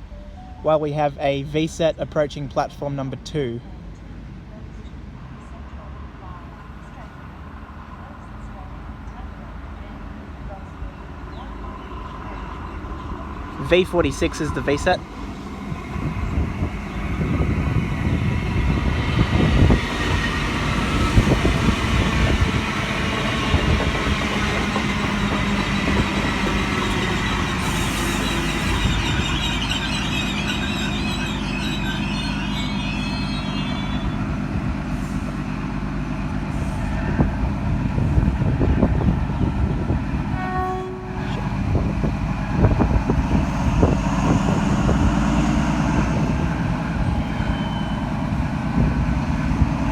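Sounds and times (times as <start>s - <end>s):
train rumbling: 0.0s - 49.9s
wheels and brakes squealing: 24.3s - 34.3s, 47.0s - 48.4s.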